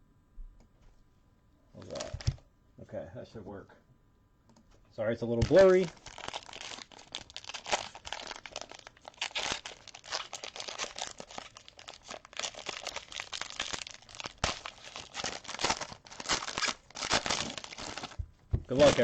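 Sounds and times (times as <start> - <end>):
plastic wrapping crinkling and tearing: 1.8 - 2.4, 5.4 - 19.0.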